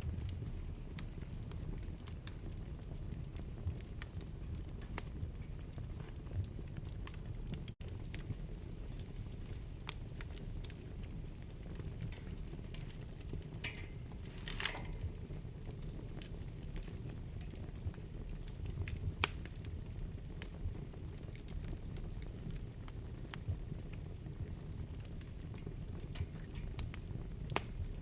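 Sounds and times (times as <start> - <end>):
fire crackling and popping: 0.0 - 28.0
roar of fire flames: 0.0 - 28.0.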